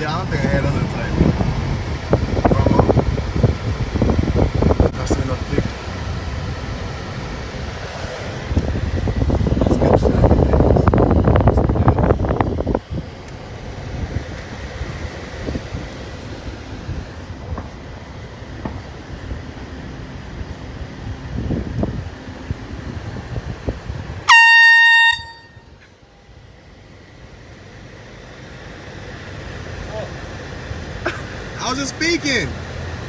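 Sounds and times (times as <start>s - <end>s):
loud rumbling noise: 0.0s - 24.3s, 27.0s - 33.0s
street noise: 0.0s - 33.0s
air horn blast: 24.2s - 25.9s.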